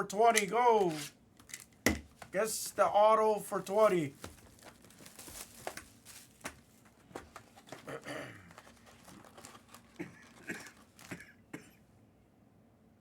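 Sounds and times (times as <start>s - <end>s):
packaging crinkling and tearing: 4.1s - 11.2s.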